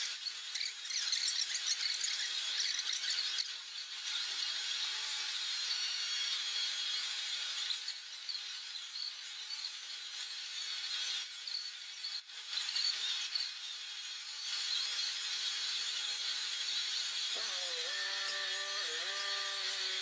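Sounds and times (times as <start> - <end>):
milling machine cutting metal: 13.2 - 20.0.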